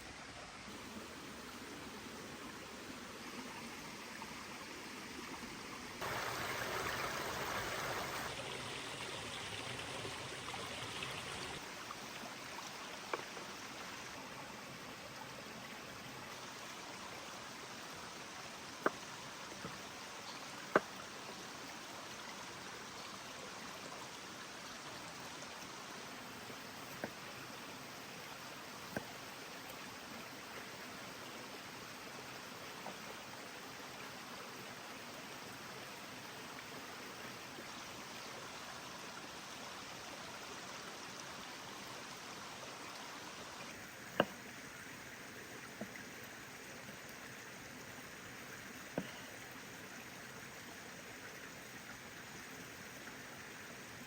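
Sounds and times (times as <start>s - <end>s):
wood fire hissing: 6.0s - 11.6s.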